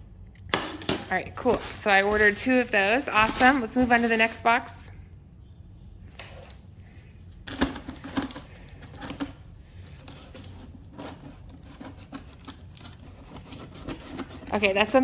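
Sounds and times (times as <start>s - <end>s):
cardboard box being opened: 1.4s - 4.4s.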